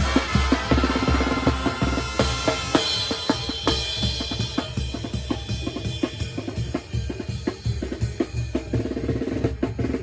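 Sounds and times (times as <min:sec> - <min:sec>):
brass band playing: 0:00.0 - 0:05.1
drums and cymbals beat: 0:00.0 - 0:10.0.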